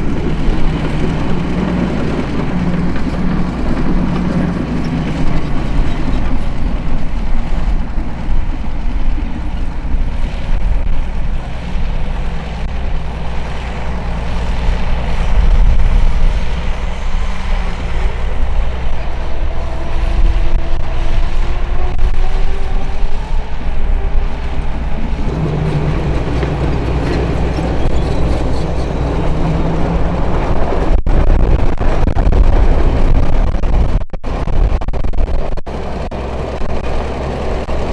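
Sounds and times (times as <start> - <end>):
diesel engine rumbling: 0.0 - 37.9
rising engine tone: 14.4 - 37.9.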